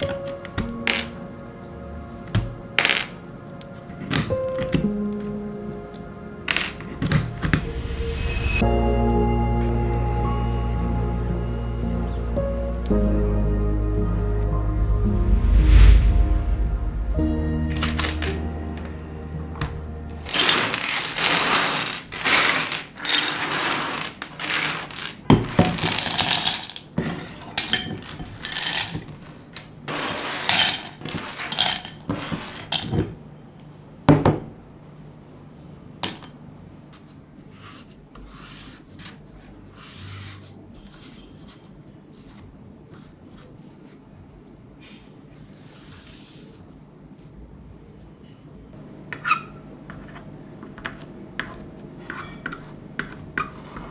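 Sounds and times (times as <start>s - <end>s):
plastic keycaps clattering: 20.2s - 29.6s.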